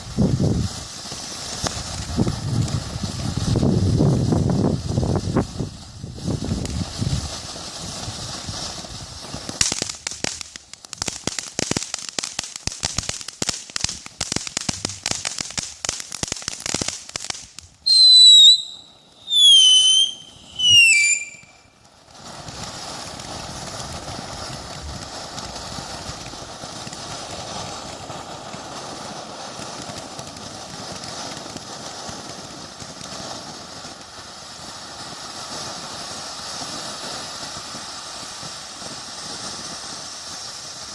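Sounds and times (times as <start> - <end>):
firework crackling: 0.0 - 40.9
firework spraying hiss: 0.0 - 40.9
firework whistles dropping in pitch: 17.8 - 21.7.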